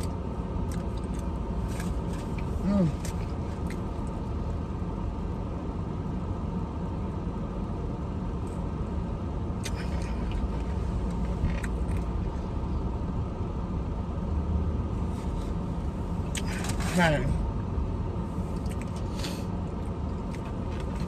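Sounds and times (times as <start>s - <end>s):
car engine idling rumble: 0.0s - 21.0s.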